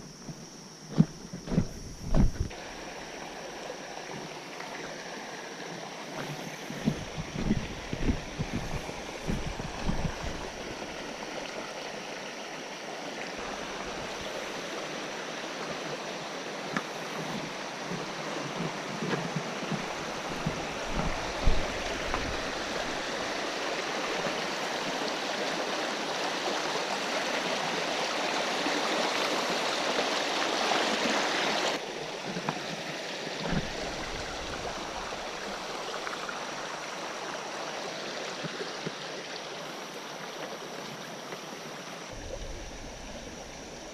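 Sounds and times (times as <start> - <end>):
creek water rushing over rocks: 0.0 - 43.9
low knocks: 0.2 - 2.6.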